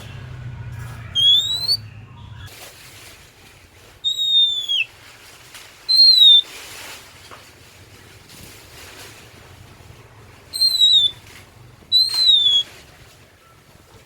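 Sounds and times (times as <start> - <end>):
bird whistling song: 1.1 - 1.9, 4.0 - 4.9, 5.9 - 6.5, 10.5 - 11.3, 11.9 - 12.8.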